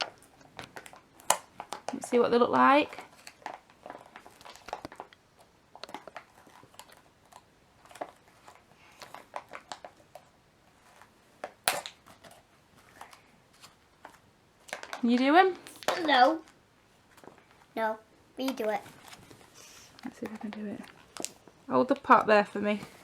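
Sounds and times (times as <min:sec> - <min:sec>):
packaging crinkling: 0:02.9 - 0:15.0.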